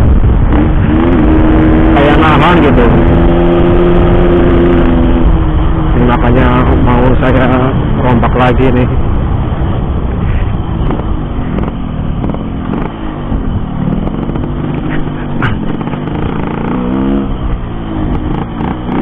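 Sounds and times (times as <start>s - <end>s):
loud two-stroke motorcycle engine: 0.0s - 19.0s.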